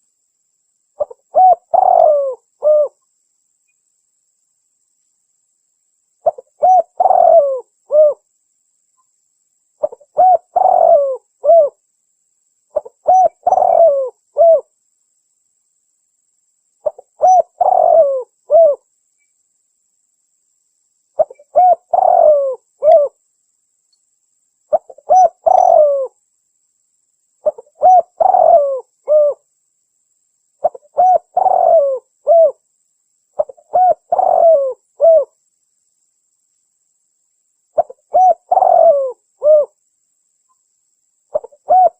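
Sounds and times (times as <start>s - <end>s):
dove cooing: 1.0s - 3.0s, 6.2s - 8.2s, 9.8s - 11.8s, 12.8s - 14.7s, 16.8s - 18.8s, 21.2s - 23.2s, 24.7s - 26.2s, 27.4s - 29.4s, 30.6s - 32.6s, 33.4s - 35.4s, 37.8s - 39.8s, 41.3s - 41.9s.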